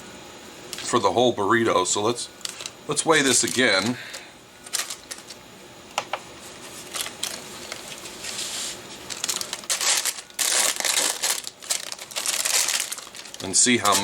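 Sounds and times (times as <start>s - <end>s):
wrapping crinkling and rustling: 2.4s - 5.4s, 6.4s - 14.0s.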